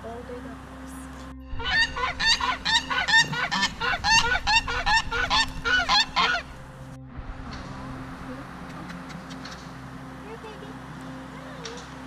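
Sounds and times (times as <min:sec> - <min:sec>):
farmyard fowl calling loudly: 0:01.6 - 0:06.6.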